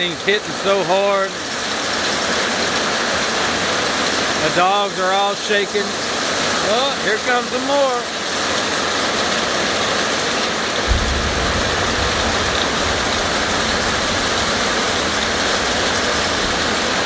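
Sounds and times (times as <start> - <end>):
heavy rain pouring: 0.4 - 17.0
thunder rumbling: 10.8 - 17.0.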